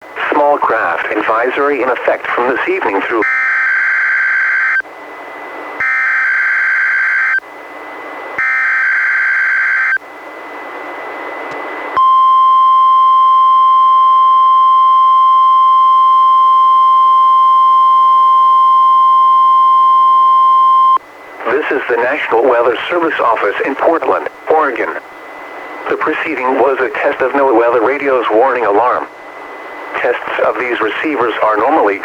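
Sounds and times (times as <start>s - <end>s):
radio static: 0.2s - 3.4s, 21.4s - 25.1s, 25.7s - 29.2s, 29.9s - 32.0s
steady warning alarm tone: 2.4s - 32.0s
screeching two-tone data bursts: 8.4s - 10.0s.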